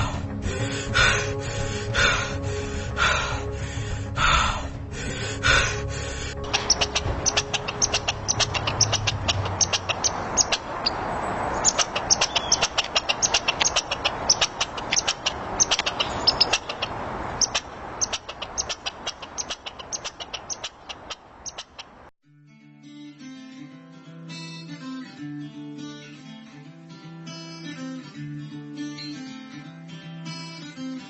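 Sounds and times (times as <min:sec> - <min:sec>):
animal chorus of high chirps: 0:06.4 - 0:22.1.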